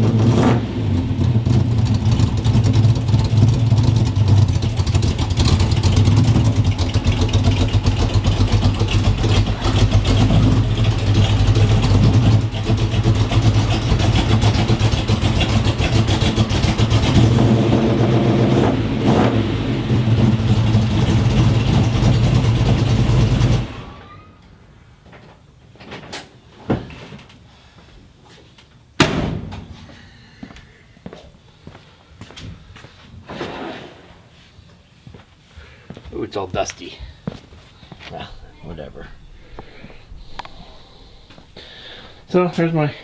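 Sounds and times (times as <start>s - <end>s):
car engine running and revving: 0.0s - 23.9s.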